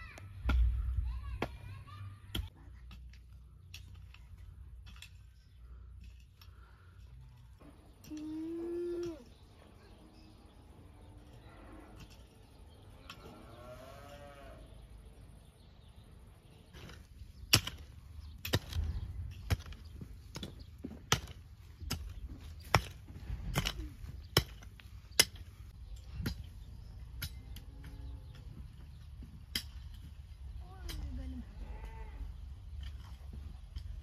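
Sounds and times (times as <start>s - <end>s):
farm animal bleating: 13.2s - 14.8s, 31.1s - 32.4s.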